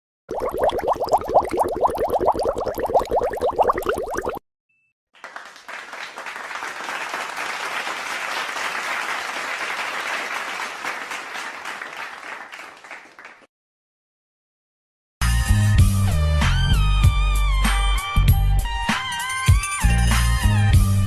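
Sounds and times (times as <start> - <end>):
crowd applauding: 5.2 - 13.5.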